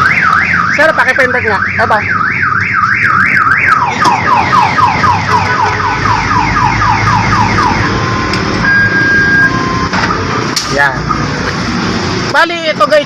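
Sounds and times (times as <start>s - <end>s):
car alarm siren: 0.0s - 10.2s.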